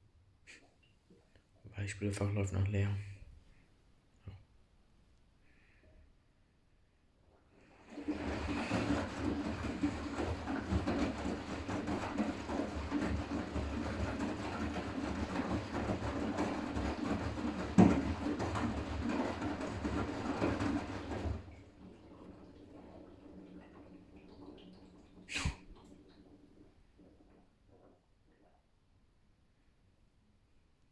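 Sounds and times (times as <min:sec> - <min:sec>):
washing machine motor hum: 0:07.5 - 0:27.9
laundry tumbling in drum: 0:07.5 - 0:28.6
loud knock in washing machine: 0:07.9 - 0:21.6.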